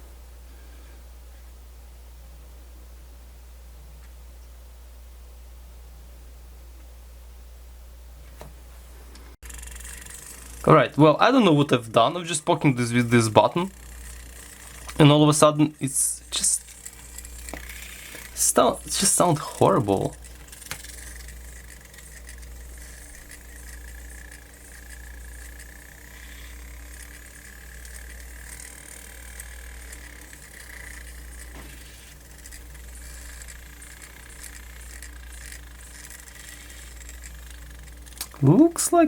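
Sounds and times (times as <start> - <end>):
faint high whine: 9.4 - 39.0.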